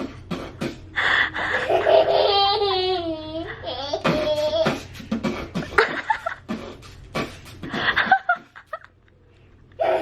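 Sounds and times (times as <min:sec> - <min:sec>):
toddler beatboxing: 0:00.0 - 0:01.0, 0:03.6 - 0:07.8
toddler laughing: 0:01.4 - 0:05.0, 0:09.7 - 0:10.0.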